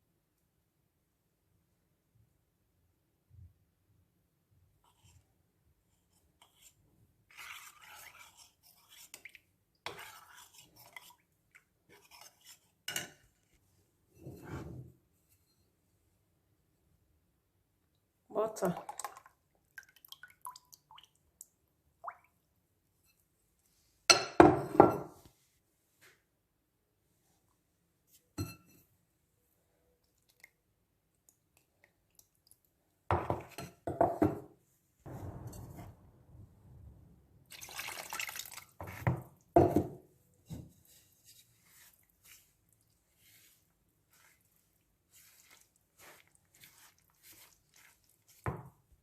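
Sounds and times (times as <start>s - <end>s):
liquid pouring into bowl: 18.8s - 21.2s, 37.4s - 39.1s.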